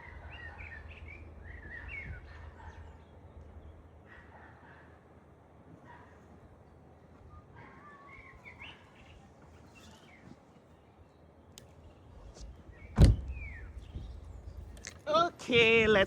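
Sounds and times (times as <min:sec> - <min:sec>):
birds chirping faintly: 0:00.0 - 0:16.0
outdoor background noise: 0:00.0 - 0:16.0
loud thump: 0:13.0 - 0:14.2.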